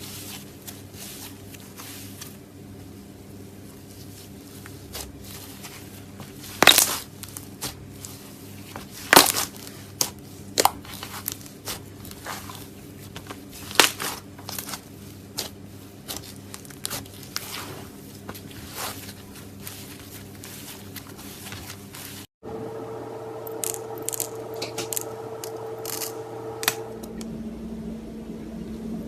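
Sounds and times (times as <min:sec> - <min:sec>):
slime crackling and crunching: 0:03.9 - 0:22.3, 0:23.5 - 0:26.8.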